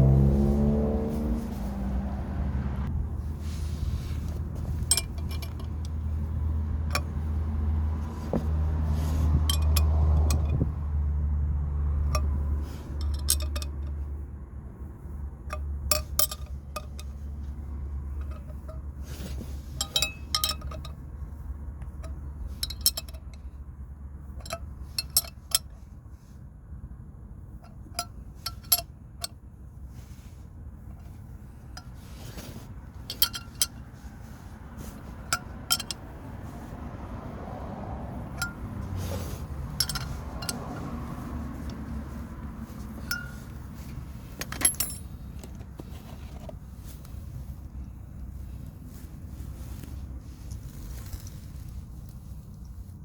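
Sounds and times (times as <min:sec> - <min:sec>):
low steady hum: 0:00.0 - 0:53.0
metal tools clinking: 0:04.3 - 0:06.3, 0:06.9 - 0:07.3, 0:08.0 - 0:10.7, 0:12.0 - 0:14.0, 0:15.5 - 0:21.0, 0:22.0 - 0:23.5, 0:24.4 - 0:25.8, 0:27.6 - 0:29.4, 0:30.9 - 0:36.2, 0:38.3 - 0:46.5.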